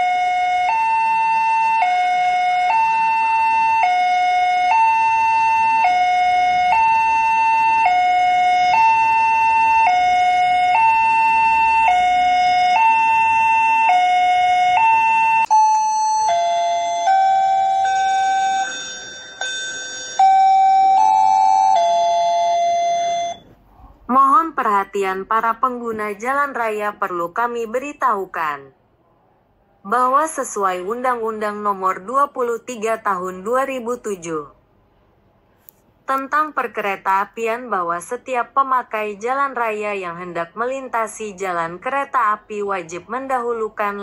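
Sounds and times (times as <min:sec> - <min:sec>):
two-tone warning alarm: 0:00.0 - 0:23.5
stepped chime tones: 0:15.5 - 0:23.5.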